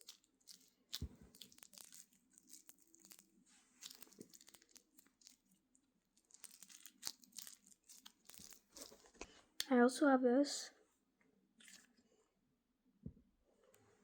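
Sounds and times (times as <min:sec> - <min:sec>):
small clicks and crackles: 0:00.0 - 0:05.5, 0:06.2 - 0:09.3
slime squishy being squeezed: 0:00.0 - 0:05.6, 0:06.2 - 0:09.1.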